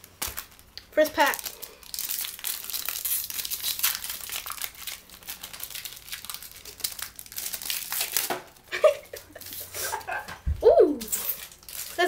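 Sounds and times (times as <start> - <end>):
plastic wrapper tearing and crinkling: 0.0 - 10.1, 11.0 - 12.0.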